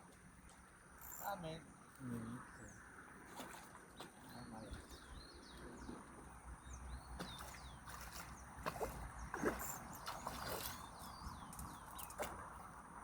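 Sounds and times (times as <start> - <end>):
birds chirping: 3.8 - 12.6.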